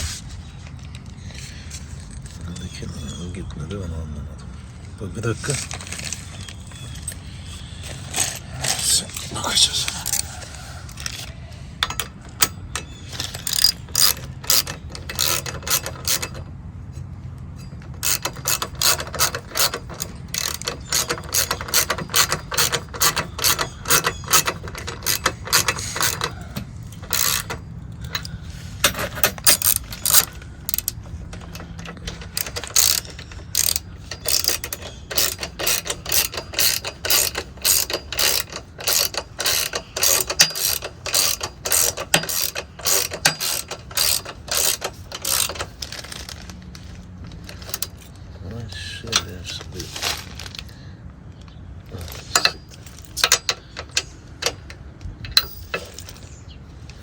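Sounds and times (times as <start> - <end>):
ratchet wrench clicking: 9.9 - 16.4, 17.6 - 46.2, 47.4 - 48.1, 52.1 - 56.2.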